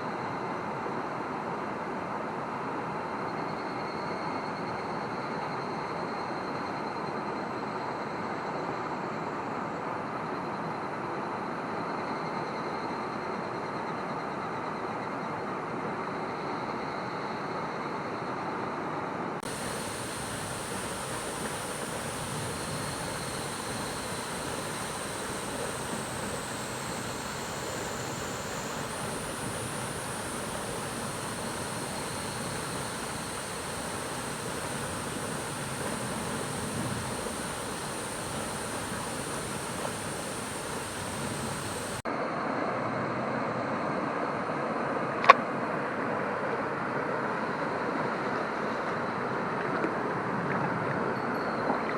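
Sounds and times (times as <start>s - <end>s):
stream water rushing: 19.4s - 42.0s
thin high whine: 19.4s - 42.0s.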